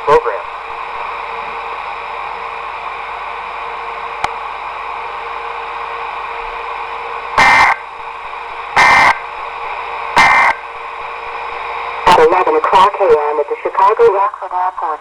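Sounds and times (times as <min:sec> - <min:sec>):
buzzing digital data bursts: 0:07.4 - 0:07.8, 0:08.8 - 0:09.2
radio receiver hiss: 0:07.4 - 0:15.0.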